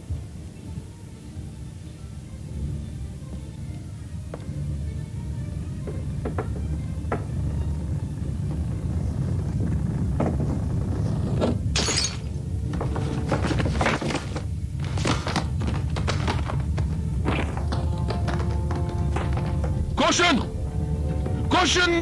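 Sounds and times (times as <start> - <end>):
film music: 0.0 - 10.2, 11.5 - 22.0
stampede low rumble: 2.2 - 22.0
crashes and breaking: 11.7 - 12.4.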